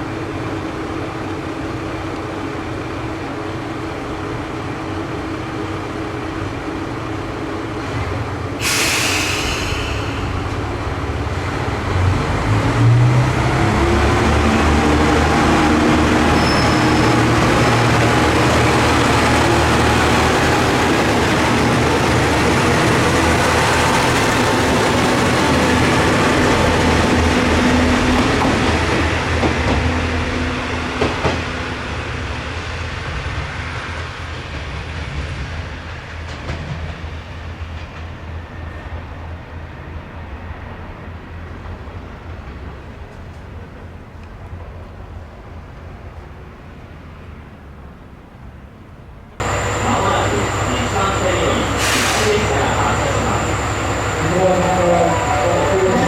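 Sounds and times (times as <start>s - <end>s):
diesel railcar engine: 0.0s - 56.0s
compressed air hiss: 8.6s - 10.6s, 51.7s - 52.7s.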